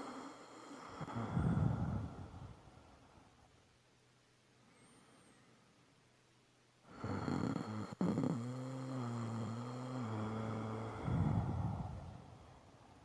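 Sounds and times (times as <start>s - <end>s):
person snoring: 0.0s - 2.2s, 6.9s - 12.2s.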